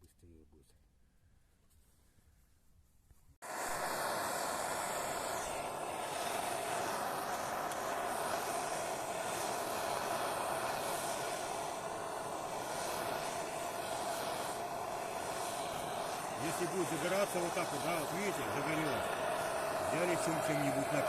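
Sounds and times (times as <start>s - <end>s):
gas torch roaring: 3.4s - 21.0s.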